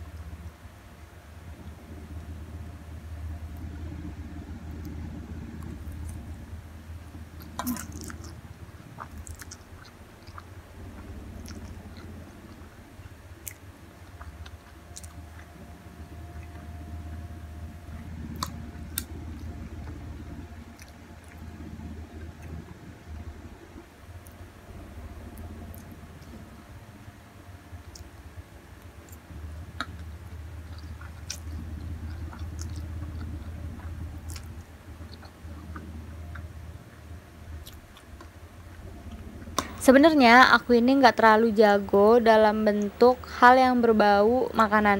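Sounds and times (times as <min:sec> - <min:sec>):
steady low hum: 0:00.0 - 0:44.9
person chewing noodles: 0:03.6 - 0:27.0, 0:27.7 - 0:39.8.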